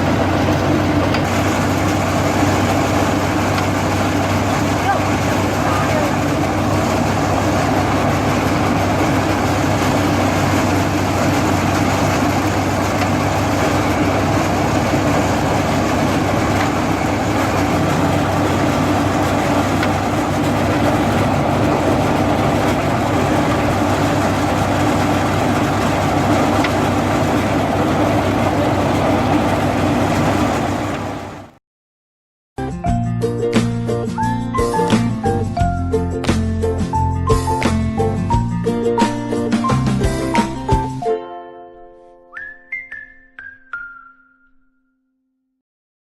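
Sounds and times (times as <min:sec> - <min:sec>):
machine engine running steadily: 0:00.0 - 0:31.6.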